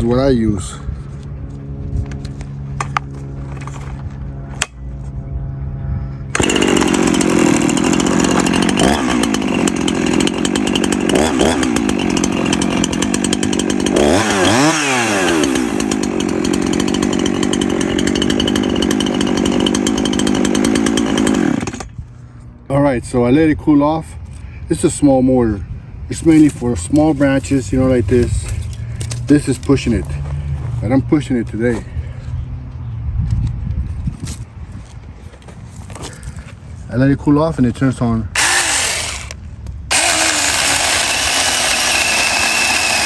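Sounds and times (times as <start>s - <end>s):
steady low hum: 0.6s - 6.4s
electric chainsaw cutting wood: 6.3s - 22.0s, 38.4s - 43.0s.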